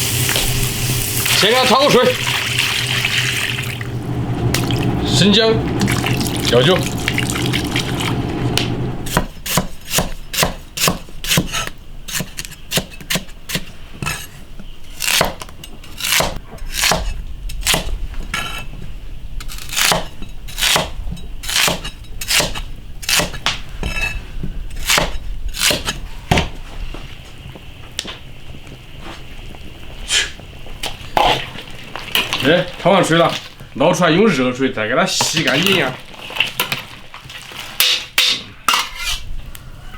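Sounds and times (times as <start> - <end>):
knife chopping on wooden board: 9.1 - 13.7, 16.0 - 17.9, 24.9 - 26.5.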